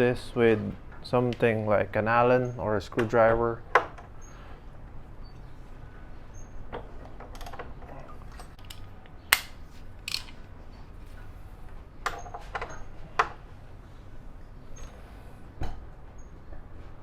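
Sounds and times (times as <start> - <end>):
metallic clicks of hand tools: 8.6 - 10.4.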